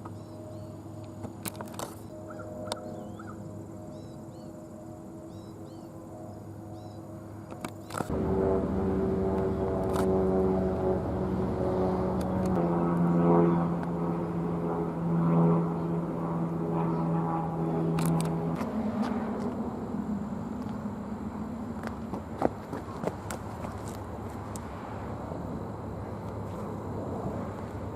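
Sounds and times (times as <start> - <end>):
train passing drone: 0.0 - 27.9.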